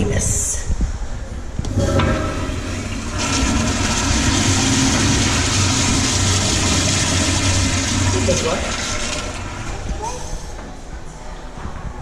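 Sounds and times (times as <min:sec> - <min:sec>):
toilet water rushing: 0:01.7 - 0:10.6.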